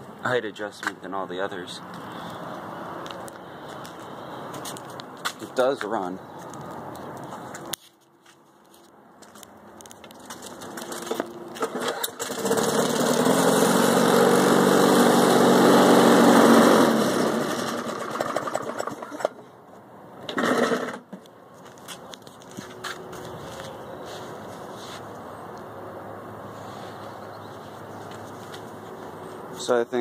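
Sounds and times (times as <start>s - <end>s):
lawnmower engine running: 10.4s - 19.4s, 20.3s - 21.2s.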